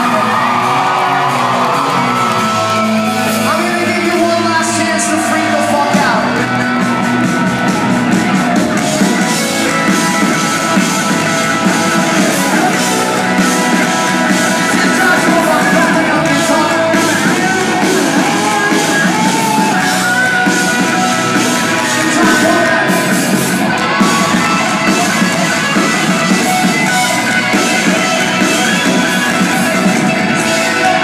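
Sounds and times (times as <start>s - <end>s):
pop-rock band playing: 0.0s - 31.0s
person singing: 12.2s - 23.4s.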